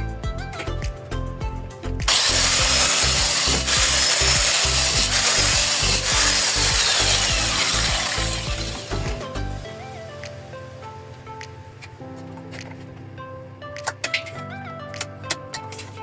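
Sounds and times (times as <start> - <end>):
background music: 0.0 - 16.0
power tool rasping: 2.1 - 9.6.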